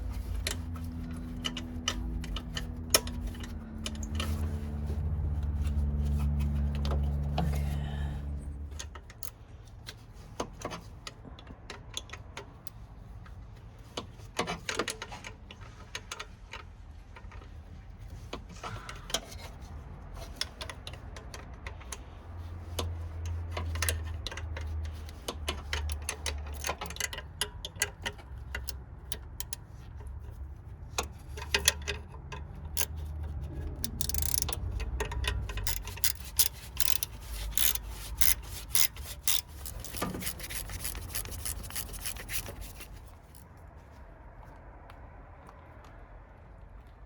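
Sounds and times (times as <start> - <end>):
rubbing and scraping: 0.0 - 7.8, 33.0 - 44.1
hand tools clicking and ticking: 31.0 - 43.4.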